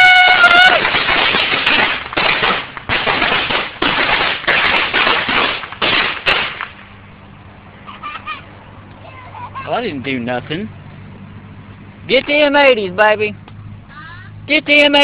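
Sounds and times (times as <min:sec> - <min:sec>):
firework hissing: 0:00.0 - 0:06.9
firework crackles: 0:00.0 - 0:07.0.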